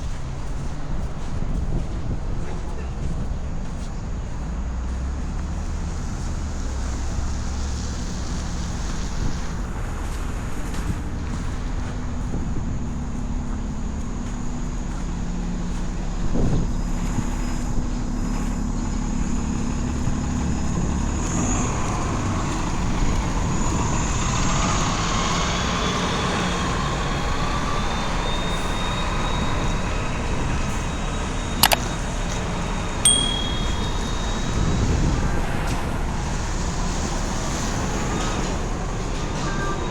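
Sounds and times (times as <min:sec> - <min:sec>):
city traffic noise: 0:00.0 - 0:39.9
faint high whine: 0:27.3 - 0:36.0
sharp click: 0:31.6 - 0:31.8
short high beep: 0:33.1 - 0:34.6.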